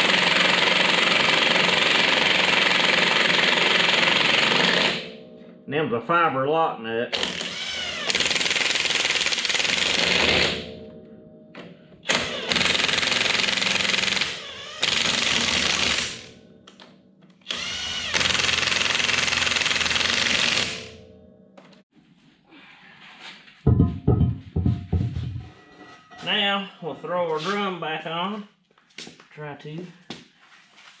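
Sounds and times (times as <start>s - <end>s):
impact wrench hammering nuts: 0.0s - 5.2s, 7.1s - 10.8s, 11.5s - 21.0s.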